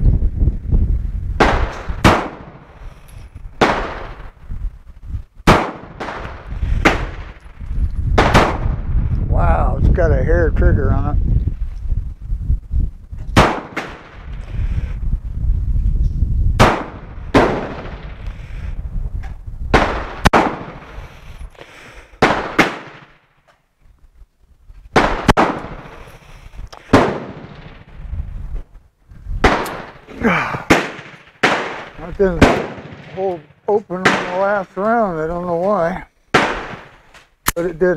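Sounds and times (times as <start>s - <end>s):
pistol shots: 1.4s - 2.7s, 3.6s - 4.3s, 5.4s - 7.4s, 8.2s - 8.7s, 13.4s - 14.2s, 16.6s - 18.1s, 19.7s - 21.0s, 22.2s - 23.2s, 25.0s - 26.0s, 26.8s - 27.9s, 29.4s - 30.0s, 30.6s - 34.7s, 36.3s - 37.0s.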